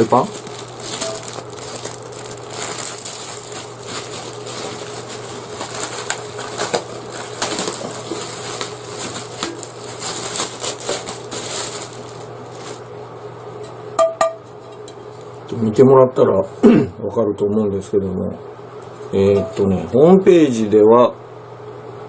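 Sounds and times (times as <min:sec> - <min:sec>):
packaging wrap crinkling: 0:00.0 - 0:12.9.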